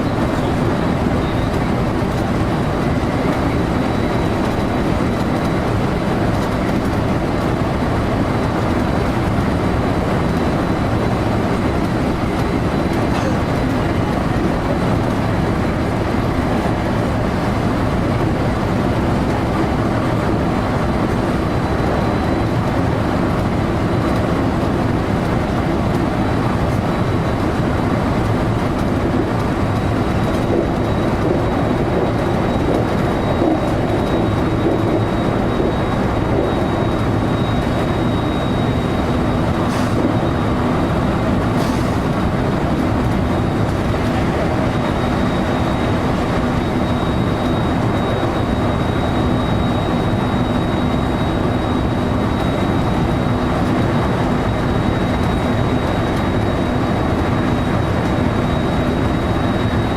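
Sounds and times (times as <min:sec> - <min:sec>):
train wheels rumbling: 0:00.0 - 0:59.9
faint high whine: 0:30.1 - 0:41.4.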